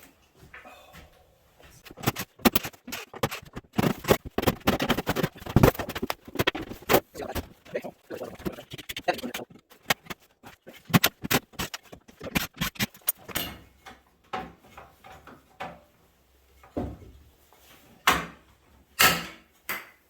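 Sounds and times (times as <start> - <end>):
sharp clicks of metal parts: 9.7 - 14.0.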